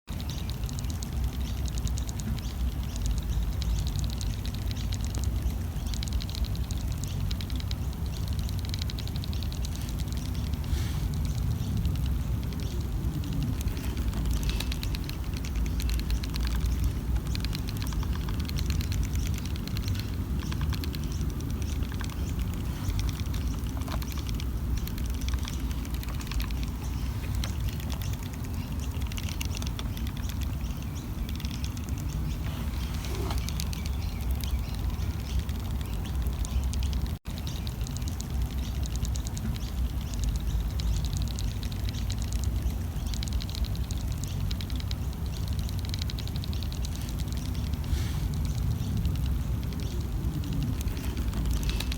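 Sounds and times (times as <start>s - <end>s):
termites crackling clicks: 0.1s - 51.9s
low rumble: 44.4s - 51.9s.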